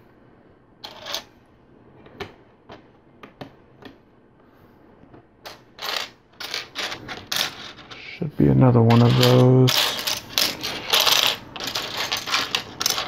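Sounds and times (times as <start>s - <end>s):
plastic pieces clattering: 8.9s - 13.0s.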